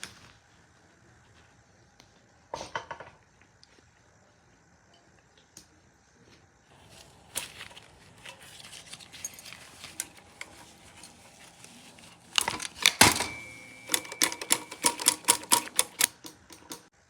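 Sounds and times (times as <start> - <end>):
faint clicks and rustling: 6.7 - 13.0
loud metallic typewriter clacks: 12.3 - 16.9
short ringing tone: 13.1 - 15.1.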